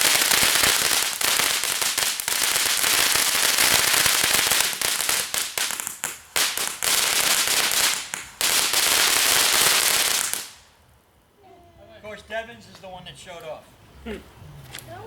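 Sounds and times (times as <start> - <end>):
firework crackles and pops: 0.0 - 10.8.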